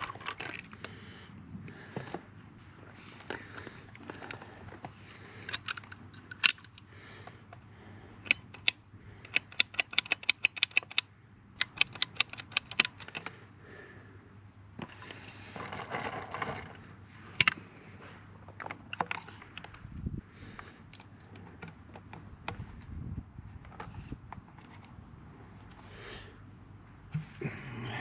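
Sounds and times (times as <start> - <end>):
rapid clicks of pipe fitting: 5.4 - 7.6, 8.2 - 13.4.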